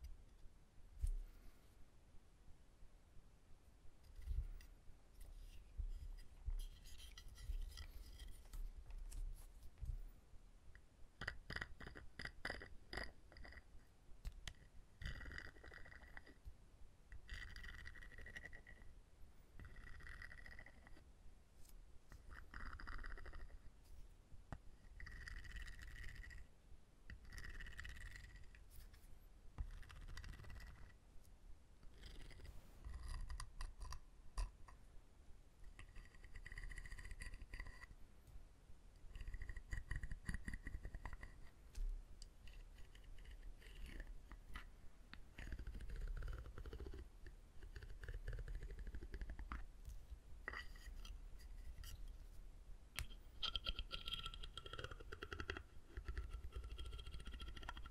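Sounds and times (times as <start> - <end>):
dry scraping on wood: 4.2 - 8.6.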